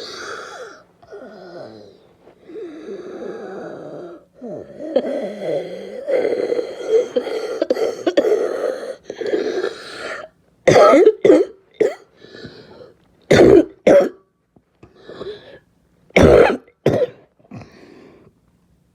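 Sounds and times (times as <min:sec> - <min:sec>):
person moaning: 0:00.0 - 0:09.8
person coughing harshly: 0:06.2 - 0:12.1, 0:13.3 - 0:14.2, 0:16.2 - 0:17.8.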